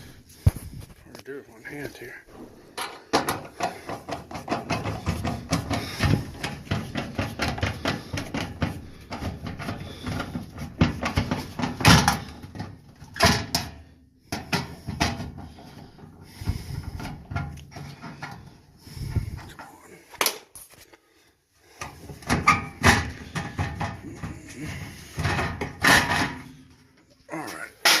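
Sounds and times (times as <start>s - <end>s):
furnace clunks: 2.3s - 13.8s, 21.8s - 26.6s
gas furnace knocking and rattling: 2.3s - 19.6s, 21.7s - 26.9s.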